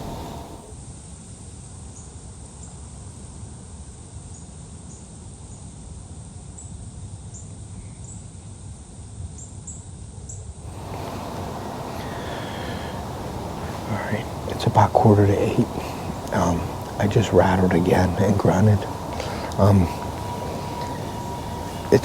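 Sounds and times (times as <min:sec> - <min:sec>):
wind rumbling on microphone: 0:00.0 - 0:00.7, 0:10.7 - 0:22.0.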